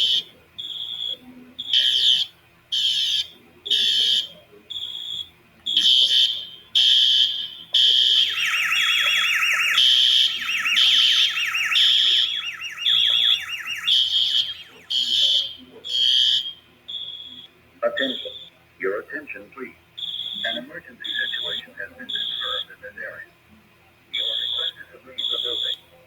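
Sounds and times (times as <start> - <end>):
pulsing fire alarm tones: 0.0 - 18.5, 20.0 - 22.7, 24.2 - 25.8
sweeping alarm tone: 8.0 - 16.2.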